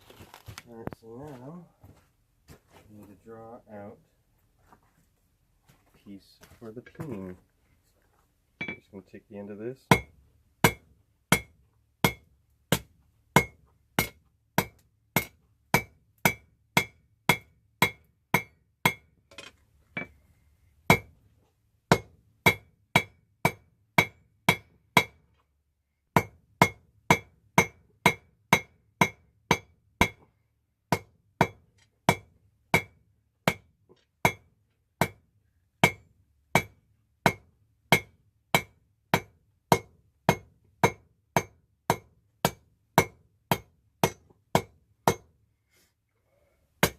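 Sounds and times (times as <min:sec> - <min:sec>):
hammer striking metal on anvil: 0:08.6 - 0:08.9, 0:26.2 - 0:30.2.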